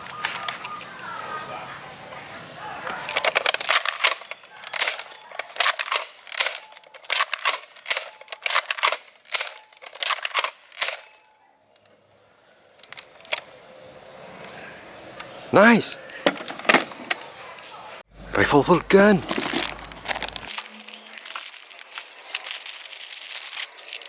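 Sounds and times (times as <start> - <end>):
toy dart blaster clacking: 3.1 - 11.2.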